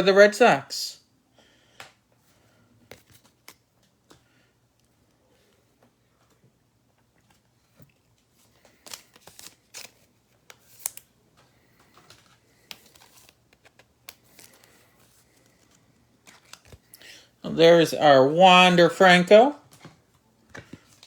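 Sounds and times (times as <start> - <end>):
trading cards being flipped: 2.9 - 4.2, 8.4 - 17.1.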